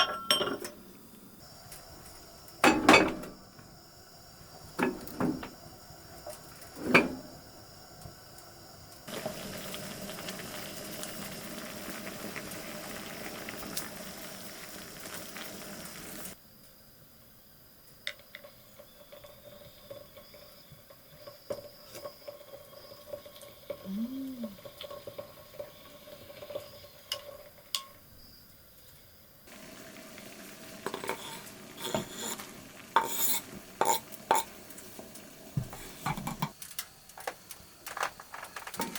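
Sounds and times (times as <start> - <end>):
metal utensils clinking on pan: 0.0 - 0.8
food sizzling: 0.9 - 16.4, 18.6 - 27.9, 29.5 - 38.9.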